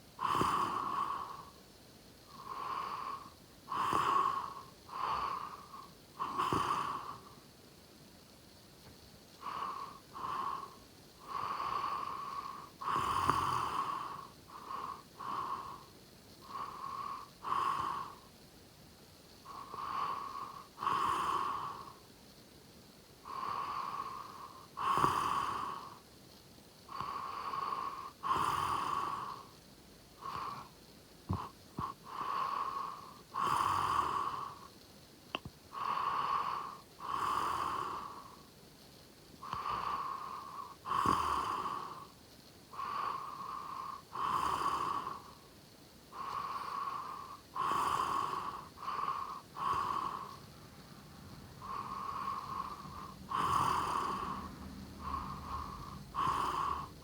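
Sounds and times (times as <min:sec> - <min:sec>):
person snoring: 0:00.2 - 0:01.5, 0:02.3 - 0:07.3, 0:09.4 - 0:18.3, 0:19.5 - 0:22.0, 0:23.3 - 0:26.0, 0:26.9 - 0:29.5, 0:31.3 - 0:34.7, 0:35.7 - 0:38.4, 0:39.4 - 0:42.1, 0:42.7 - 0:45.4, 0:46.1 - 0:50.5, 0:51.5 - 0:57.0.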